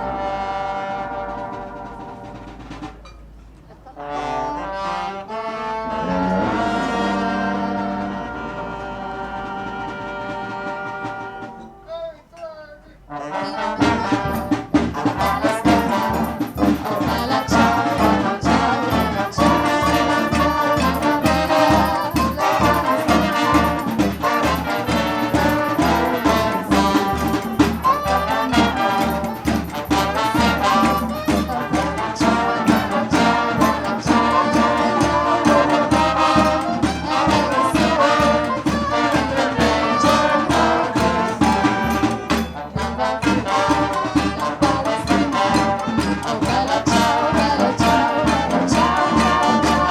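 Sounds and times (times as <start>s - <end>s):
held chord: 4.2s - 11.9s
music with a steady beat: 13.8s - 49.9s.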